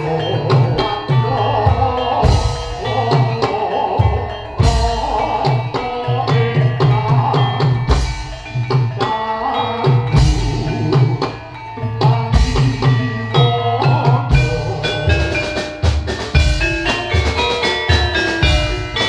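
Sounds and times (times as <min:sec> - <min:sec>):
hand drums beating: 0:00.0 - 0:19.0
ringing metal-keyed tones: 0:00.0 - 0:19.0.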